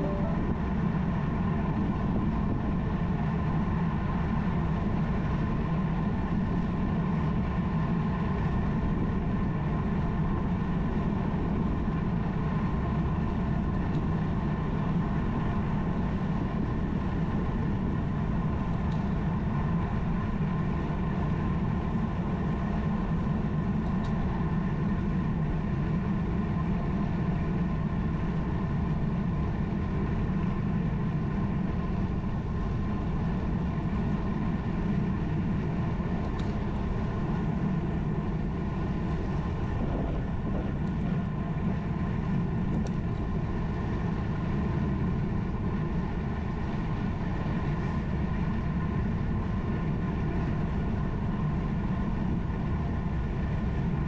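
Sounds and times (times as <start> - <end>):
held tones: 0.0 - 0.6
steady mechanical hum: 0.0 - 54.0.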